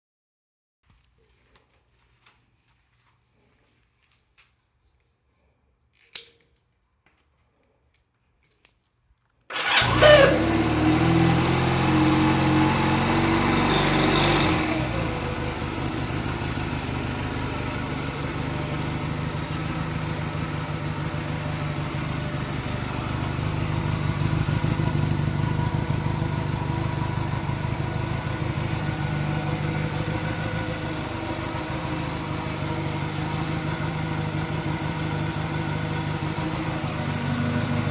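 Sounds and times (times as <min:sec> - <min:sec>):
starter motor whining and scraping: 0:09.5 - 0:20.4
engine running and idling: 0:09.5 - 0:37.9.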